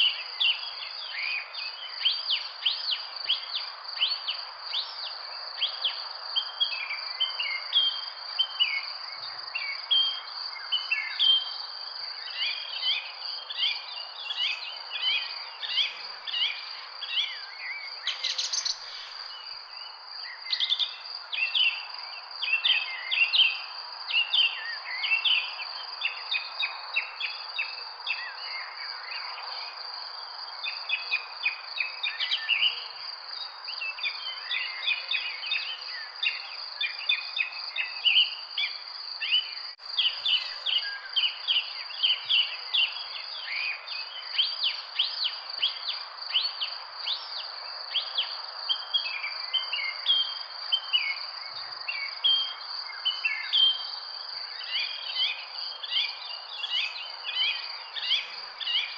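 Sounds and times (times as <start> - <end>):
birds chirping and singing: 13.6 - 21.8, 39.3 - 43.0.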